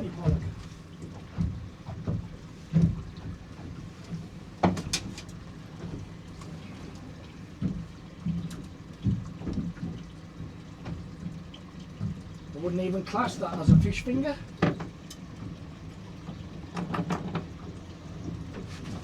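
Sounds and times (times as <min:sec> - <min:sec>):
thuds and knocks on boat: 0:00.0 - 0:06.2, 0:07.6 - 0:11.4, 0:12.0 - 0:12.3, 0:13.5 - 0:15.6, 0:16.3 - 0:19.0.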